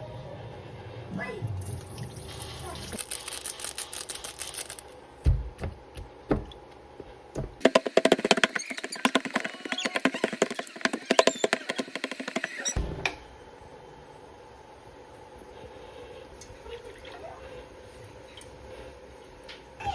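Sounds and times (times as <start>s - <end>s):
dull thumps: 5.2s - 13.1s.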